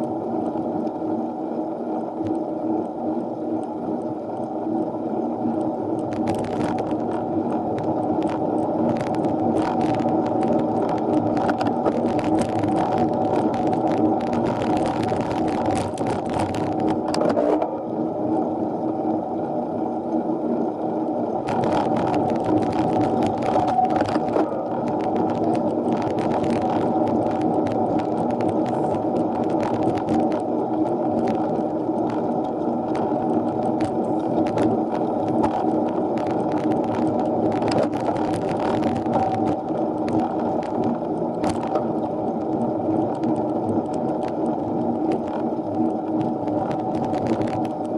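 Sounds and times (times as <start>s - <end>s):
muffled road and wind noise: 0.0s - 47.9s
bicycle clicks and rattles: 6.0s - 17.6s, 21.5s - 47.9s.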